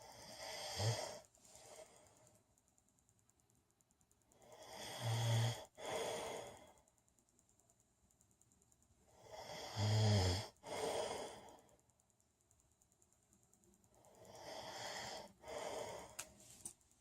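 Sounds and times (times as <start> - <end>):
man snoring: 0.0 - 1.2, 4.6 - 6.6, 9.2 - 11.4, 14.3 - 16.2.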